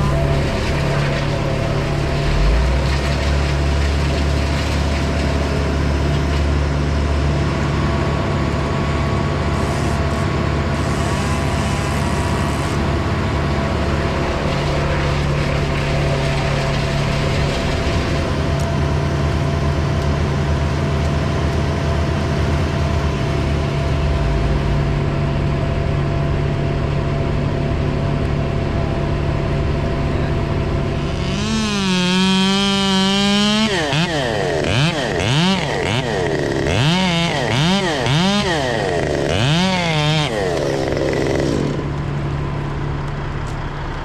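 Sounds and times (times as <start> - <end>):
steady engine drone: 0.0 - 44.0
chainsaw revving: 31.0 - 42.0.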